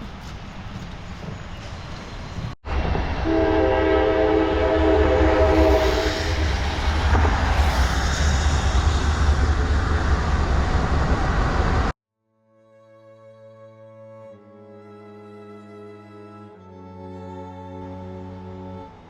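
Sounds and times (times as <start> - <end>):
train rumbling past: 0.0 - 12.0
train horn chord: 3.2 - 6.1.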